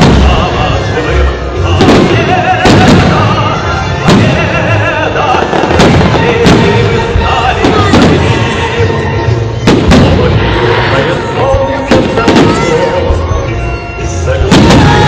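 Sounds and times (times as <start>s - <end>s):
fireworks bangs: 0.0s - 13.4s, 14.4s - 15.0s
music playing: 0.0s - 15.0s.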